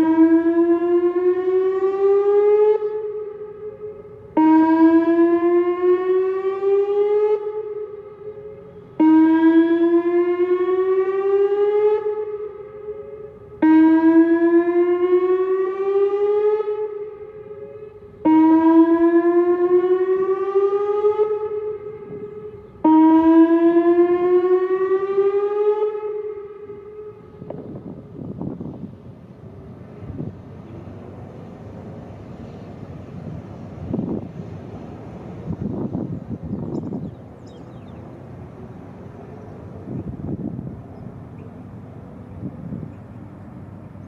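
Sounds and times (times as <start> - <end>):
electronic warning siren: 0.0 - 28.8.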